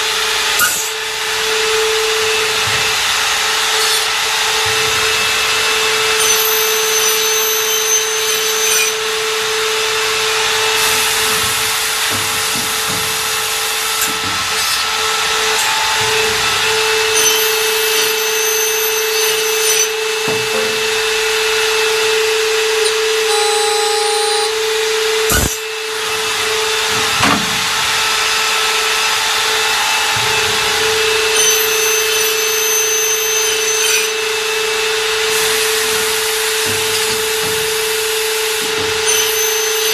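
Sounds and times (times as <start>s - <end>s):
high machine whine: 0.0s - 39.9s
machining line running: 0.1s - 39.9s
sharp knocks: 10.6s - 18.1s, 26.8s - 33.5s, 35.2s - 39.8s.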